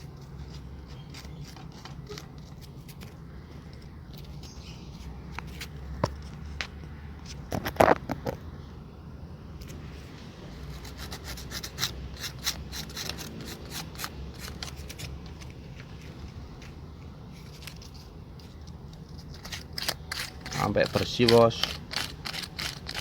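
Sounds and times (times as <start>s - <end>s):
sandpaper rubbing on metal pins: 10.6s - 15.2s, 19.2s - 23.0s.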